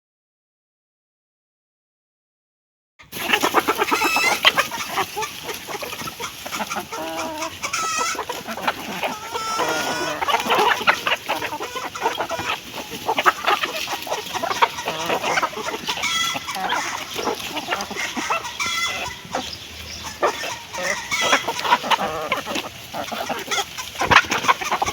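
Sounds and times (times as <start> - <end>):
hens clucking: 3.0 - 24.9.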